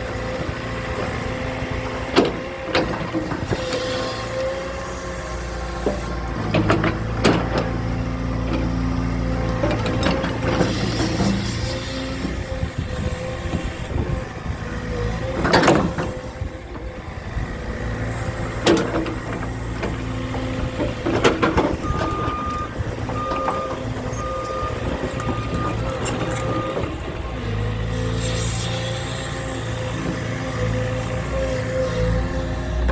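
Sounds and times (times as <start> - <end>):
heavy diesel engine running: 0.0 - 32.9
reversing alarm beeps: 21.8 - 26.8.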